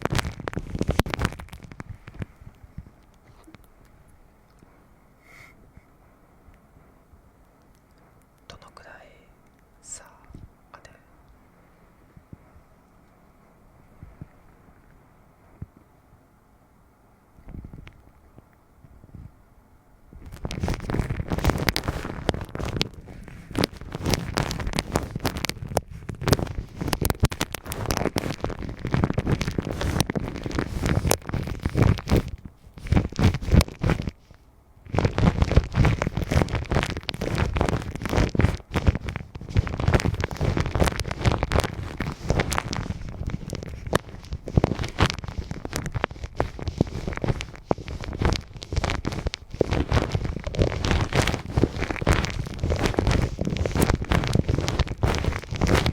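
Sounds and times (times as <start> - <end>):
rubbing against microphone: 0.0 - 3.6, 20.1 - 55.9.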